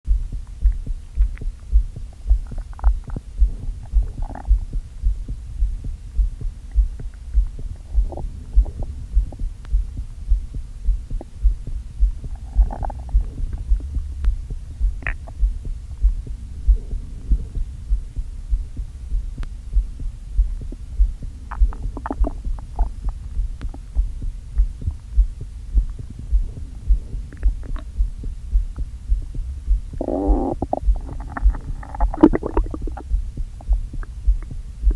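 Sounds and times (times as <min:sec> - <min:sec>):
heartbeat thumps: 0:00.0 - 0:34.9
stomach gurgles and squeaks: 0:02.1 - 0:04.8, 0:06.7 - 0:10.1, 0:11.1 - 0:14.1, 0:14.9 - 0:17.9, 0:20.7 - 0:25.0, 0:25.8 - 0:28.9, 0:29.9 - 0:34.9.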